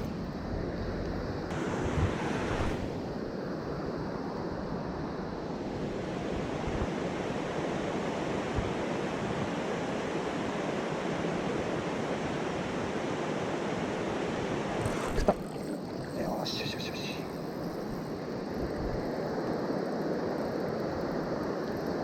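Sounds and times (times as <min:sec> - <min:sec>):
wind on microphone: 0:00.0 - 0:03.2
stream water rushing over rocks: 0:14.6 - 0:19.3.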